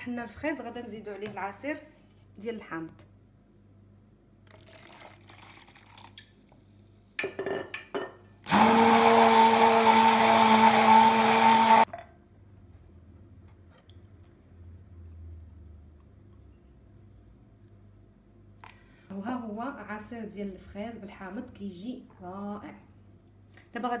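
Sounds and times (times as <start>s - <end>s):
blender motor whining: 8.4s - 11.9s.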